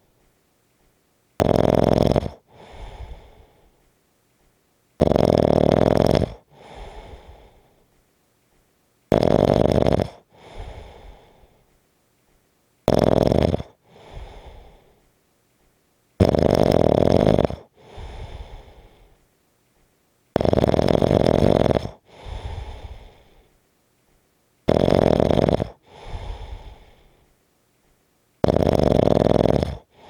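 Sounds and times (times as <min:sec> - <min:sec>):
quiet breath: 0:00.0 - 0:01.4, 0:02.3 - 0:05.0, 0:06.3 - 0:09.1, 0:10.1 - 0:12.8, 0:13.6 - 0:16.2, 0:17.4 - 0:20.3, 0:21.4 - 0:24.7, 0:25.5 - 0:28.4, 0:29.6 - 0:30.0
person snoring: 0:01.4 - 0:03.5, 0:05.0 - 0:07.6, 0:09.1 - 0:11.5, 0:12.9 - 0:14.9, 0:16.2 - 0:19.0, 0:20.4 - 0:23.4, 0:24.7 - 0:27.1, 0:28.4 - 0:30.0.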